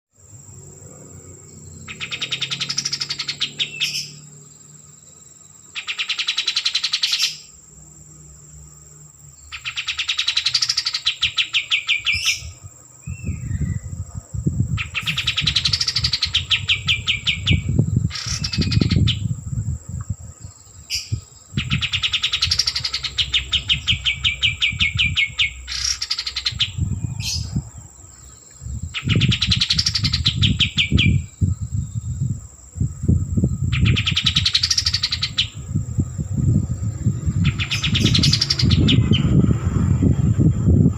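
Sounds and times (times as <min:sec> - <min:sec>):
songbird singing: 0:00.1 - 0:40.9
low rumble: 0:26.6 - 0:29.5, 0:35.5 - 0:40.9.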